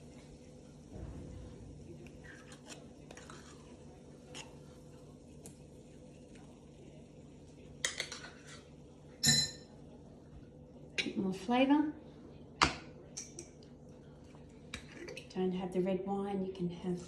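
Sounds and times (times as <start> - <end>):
faint steady hum: 0.0 - 17.0
dishes and utensils clinking: 9.2 - 9.7.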